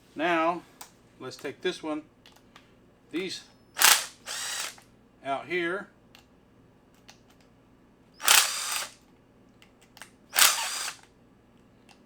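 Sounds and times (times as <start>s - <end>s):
cordless driver running in reverse: 3.8s - 4.8s, 8.2s - 9.0s, 10.4s - 11.0s.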